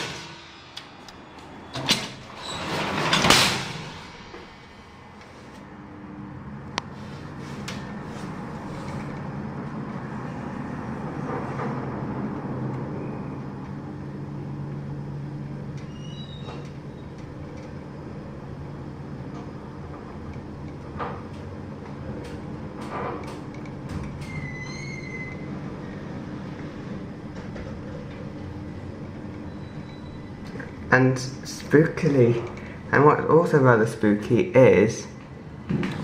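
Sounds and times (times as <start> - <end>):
lift machinery hum: 0.0 - 36.0
brief squeaks: 15.8 - 17.1.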